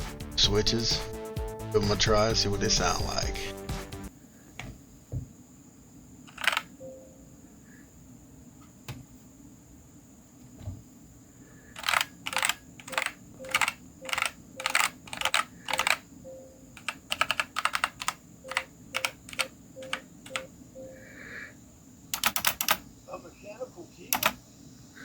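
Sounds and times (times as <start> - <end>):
mechanical keyboard typing: 6.3 - 6.7, 11.8 - 16.0, 16.8 - 20.5, 22.2 - 22.8, 24.1 - 24.4.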